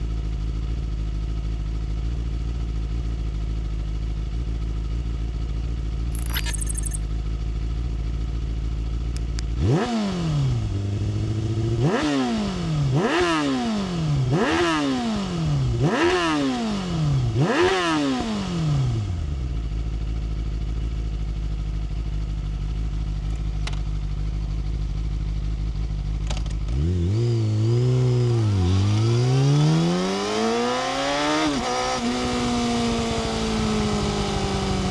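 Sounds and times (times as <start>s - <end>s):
motorcycle engine revving: 26.7s - 34.9s.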